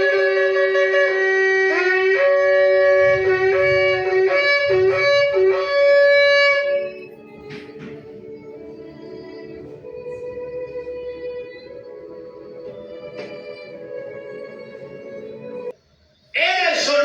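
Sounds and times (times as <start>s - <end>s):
shofar blowing: 0.0s - 10.2s.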